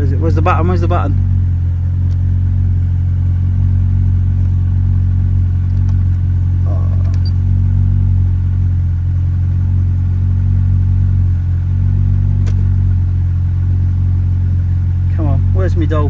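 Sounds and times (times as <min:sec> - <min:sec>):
car engine idling: 0:00.0 - 0:16.0
sharp click: 0:12.4 - 0:12.7.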